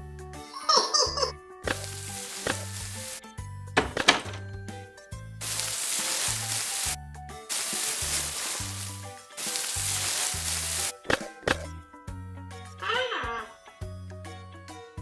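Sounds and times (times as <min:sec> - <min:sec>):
cartoon music with bass line: 0:00.6 - 0:02.5
steady hiss: 0:01.7 - 0:03.2, 0:05.4 - 0:11.0.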